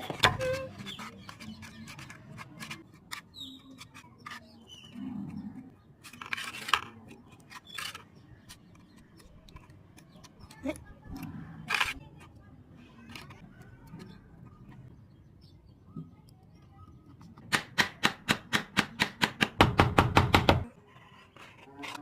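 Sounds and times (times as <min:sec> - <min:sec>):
sharp knock on wood: 0:17.5 - 0:20.6.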